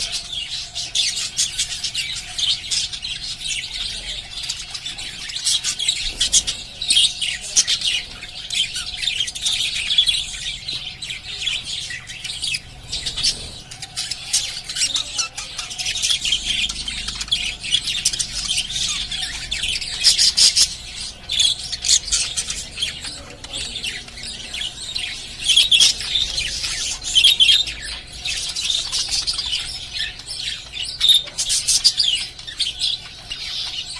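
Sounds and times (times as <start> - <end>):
parrots chirping: 0.0 - 33.9.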